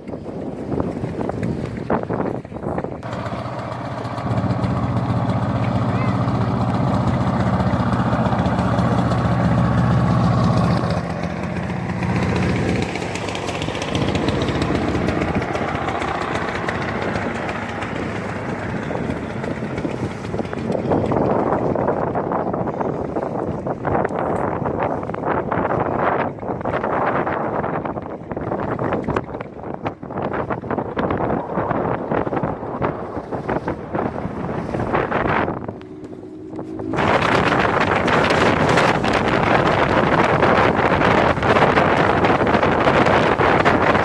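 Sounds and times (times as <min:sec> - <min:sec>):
rush of wind and water: 0:00.0 - 0:44.0
speedboat engine running: 0:00.0 - 0:44.0.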